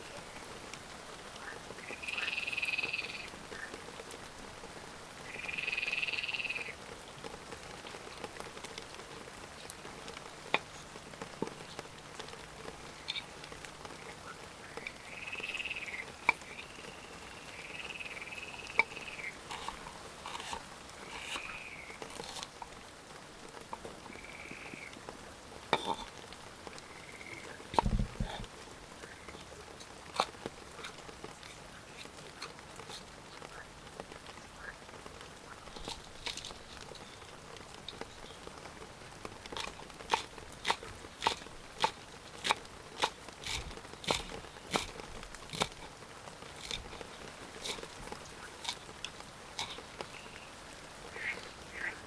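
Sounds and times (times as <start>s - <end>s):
light rain hiss: 0.0s - 52.0s
frogs croaking: 1.4s - 3.8s, 5.2s - 6.8s, 14.0s - 22.5s, 23.8s - 25.0s, 26.8s - 28.4s, 39.5s - 45.9s, 46.6s - 52.0s.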